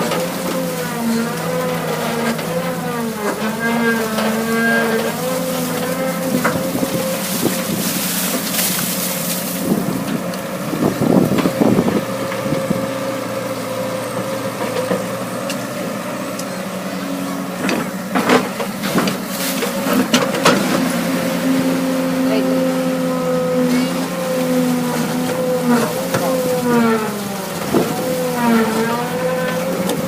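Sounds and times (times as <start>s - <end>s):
digging knocks and scrapes: 0.0s - 10.2s, 17.6s - 30.0s
excavator engine running: 0.0s - 30.0s.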